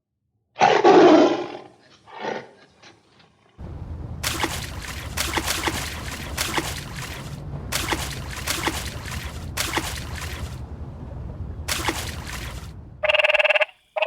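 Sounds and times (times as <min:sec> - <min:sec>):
steady low rumble: 0:03.6 - 0:13.4.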